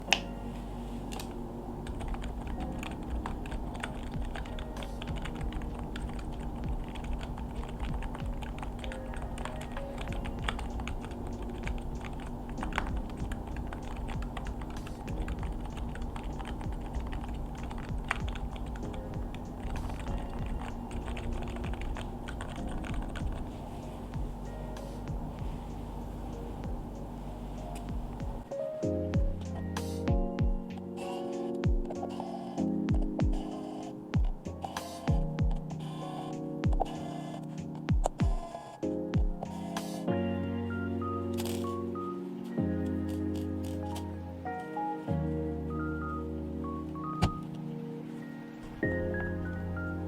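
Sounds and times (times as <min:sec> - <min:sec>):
soft music: 0:00.0 - 0:50.0
keyboard typing: 0:01.0 - 0:28.5, 0:29.2 - 0:40.1, 0:41.3 - 0:41.9.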